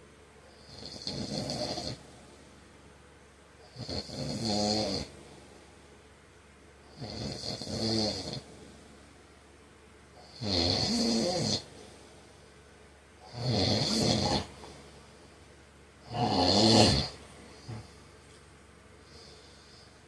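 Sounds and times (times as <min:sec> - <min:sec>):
man snoring: 0:00.6 - 0:02.0, 0:03.6 - 0:05.2, 0:06.9 - 0:08.5, 0:10.2 - 0:11.7, 0:13.2 - 0:14.6, 0:16.0 - 0:18.0
quiet breathing: 0:03.6 - 0:06.0, 0:06.8 - 0:09.3, 0:10.1 - 0:20.0.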